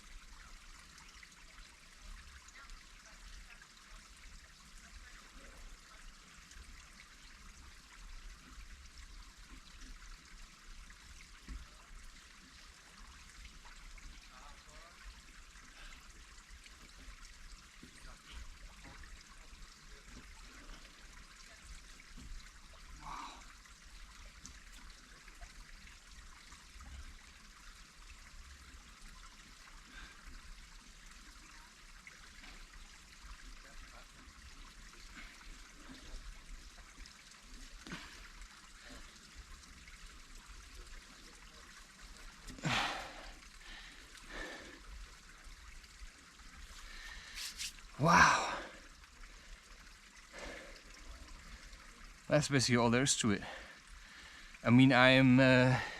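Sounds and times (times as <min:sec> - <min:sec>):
water trickling: 0:00.0 - 0:55.9.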